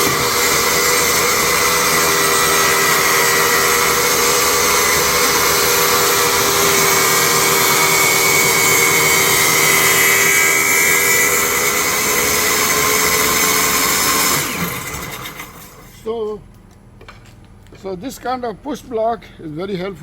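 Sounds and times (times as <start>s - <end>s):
saw spinning down: 0.0s - 16.0s
table saw whining: 0.0s - 16.1s.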